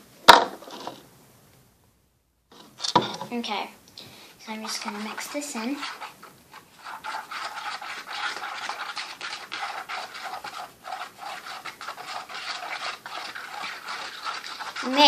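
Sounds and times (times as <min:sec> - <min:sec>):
tool stirring and scraping mixture: 0:04.4 - 0:15.0.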